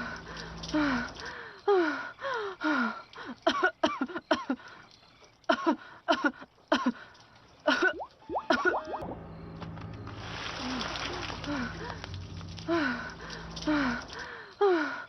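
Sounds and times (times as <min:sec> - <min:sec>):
woman coughing: 0:03.4 - 0:04.6.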